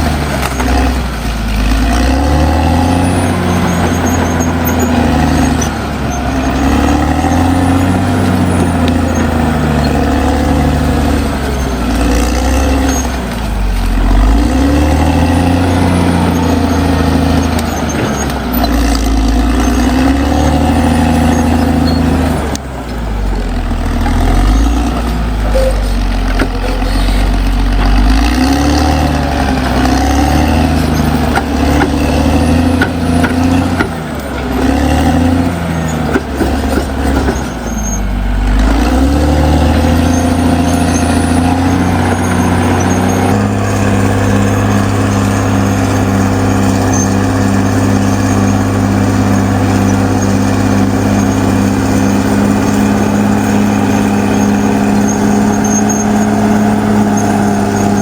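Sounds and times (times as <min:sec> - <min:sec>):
bulldozer diesel engine revving: 0:00.0 - 0:58.0.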